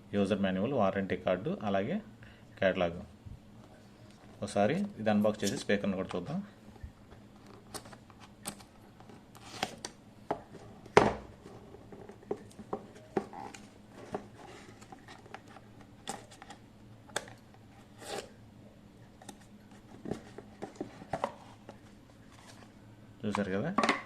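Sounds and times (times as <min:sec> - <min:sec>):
packaging scrapes and rustles: 0:11.4 - 0:16.6.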